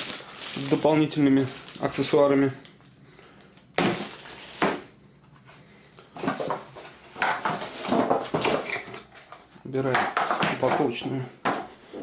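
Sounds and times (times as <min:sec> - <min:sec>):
clattering and rustling packaging: 0:00.0 - 0:02.4, 0:03.8 - 0:04.8, 0:06.2 - 0:11.0.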